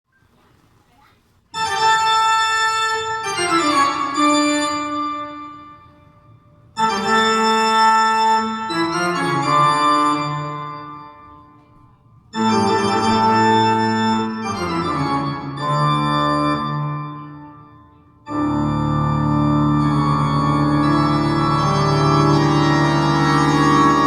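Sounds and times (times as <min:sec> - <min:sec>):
organ-like keyboard chords: 0:01.6 - 0:24.0.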